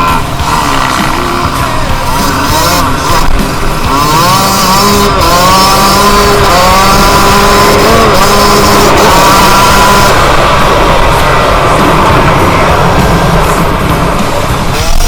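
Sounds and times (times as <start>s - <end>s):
two-stroke engine revving: 0.0s - 15.0s.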